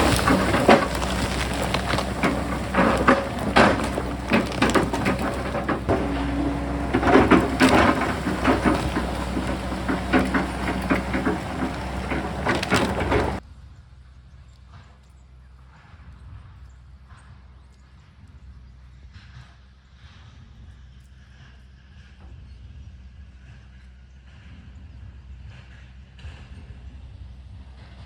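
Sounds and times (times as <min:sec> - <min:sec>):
excavator engine running: 0:00.0 - 0:13.4
rock knocking and scraping: 0:00.0 - 0:13.4.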